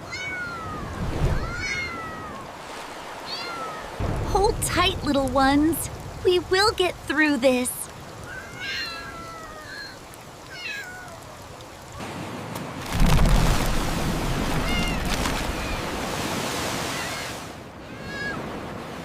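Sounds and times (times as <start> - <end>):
cat meowing: 0.0 - 2.5, 3.2 - 4.0, 8.2 - 11.2, 17.9 - 18.4
water rushing with deep rumble: 0.0 - 19.0.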